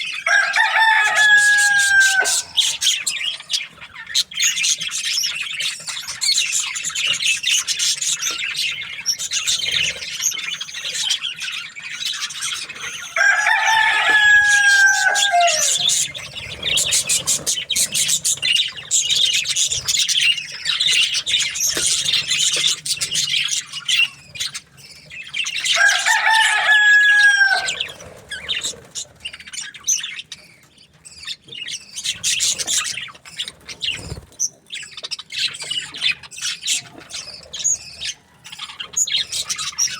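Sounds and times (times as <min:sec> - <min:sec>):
budgerigars chattering and chirping: 0:00.0 - 0:39.9
rooster crowing: 0:00.2 - 0:03.6, 0:13.0 - 0:16.1, 0:25.6 - 0:28.0.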